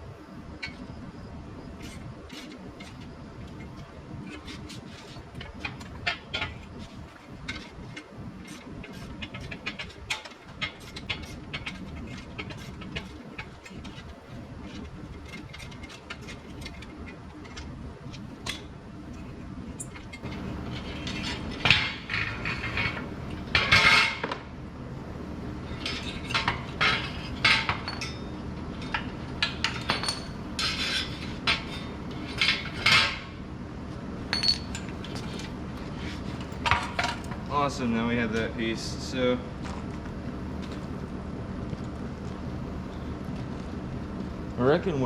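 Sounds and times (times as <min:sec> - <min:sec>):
steady low hum: 0:00.0 - 0:45.0
metal clanking: 0:19.8 - 0:24.4, 0:25.6 - 0:33.4, 0:34.3 - 0:37.8.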